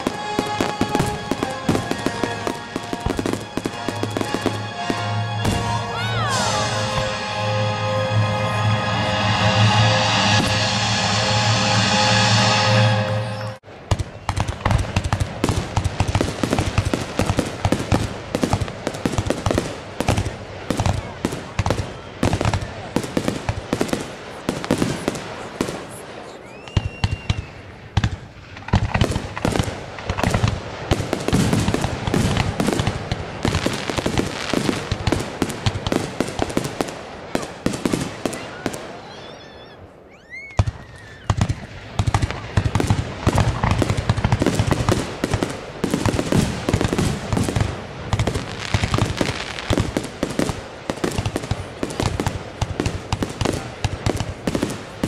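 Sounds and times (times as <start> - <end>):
fireworks pops and bangs: 0.0 - 4.6, 13.7 - 39.0, 40.5 - 55.0
firework whistling glides: 0.0 - 15.2, 16.3 - 27.9, 29.1 - 52.4.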